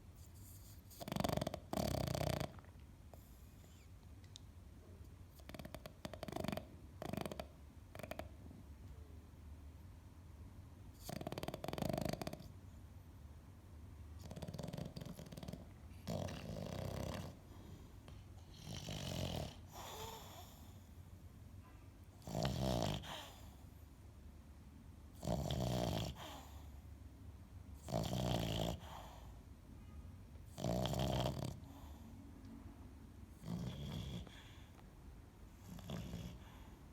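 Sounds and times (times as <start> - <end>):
dog snoring: 0.2 - 3.9, 5.3 - 8.4, 10.9 - 12.6, 14.2 - 21.0, 22.2 - 23.6, 25.1 - 26.8, 27.8 - 29.4, 30.5 - 32.1, 33.3 - 34.7, 35.5 - 36.9.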